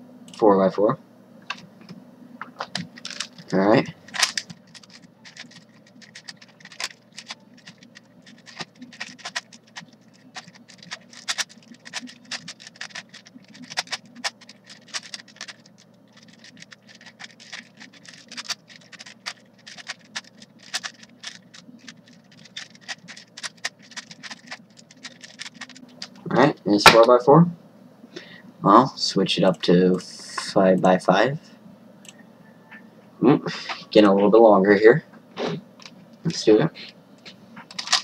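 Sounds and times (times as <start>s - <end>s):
puzzle cube plastic clicks and scrapes: 2.7s - 26.2s, 37.7s - 38.0s.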